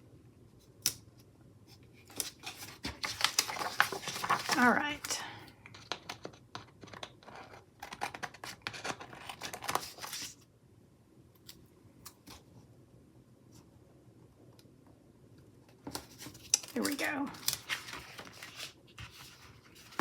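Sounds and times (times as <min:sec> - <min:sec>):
scissors snipping paper: 0:16.2 - 0:18.7.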